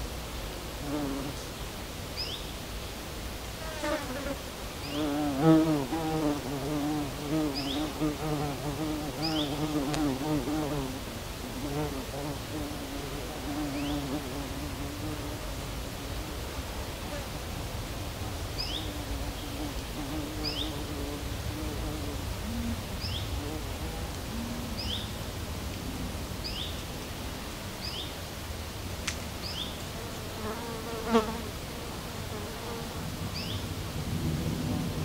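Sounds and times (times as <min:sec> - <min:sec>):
flying insect buzzing: 0:00.7 - 0:01.6, 0:03.6 - 0:17.4, 0:18.3 - 0:25.4, 0:29.4 - 0:33.6.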